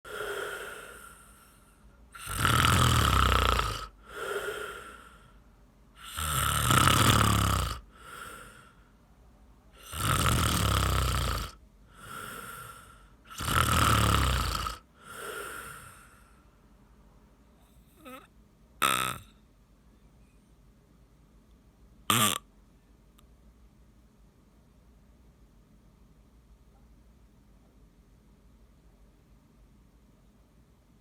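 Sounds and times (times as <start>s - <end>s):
loud rattling snoring: 2.2s - 5.1s, 6.0s - 8.6s, 9.8s - 16.0s, 18.8s - 19.3s, 22.1s - 22.4s.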